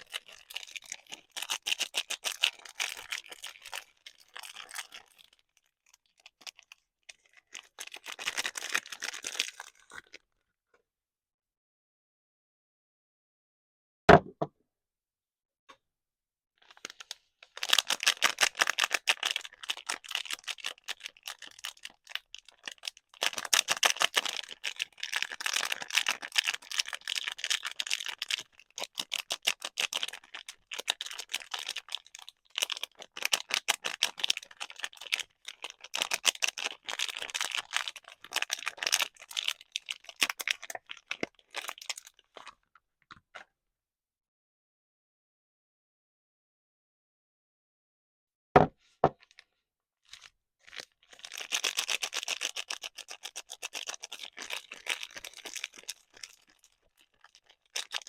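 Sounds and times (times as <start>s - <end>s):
packaging crinkling and crackling: 0.0s - 10.2s, 16.6s - 42.6s, 50.1s - 58.0s.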